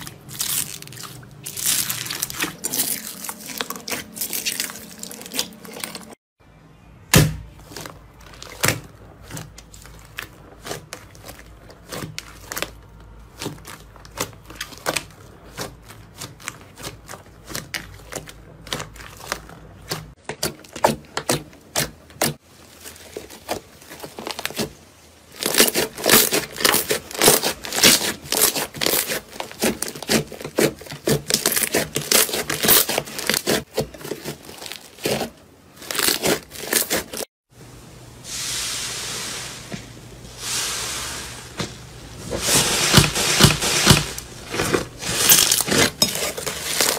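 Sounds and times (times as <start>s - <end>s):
slime squeezed by hands: 0.0s - 6.1s, 21.2s - 37.2s.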